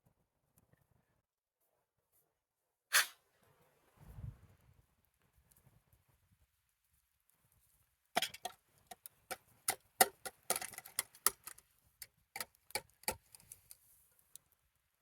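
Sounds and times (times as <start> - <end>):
sharp clicks and light knocks: 8.2 - 13.8.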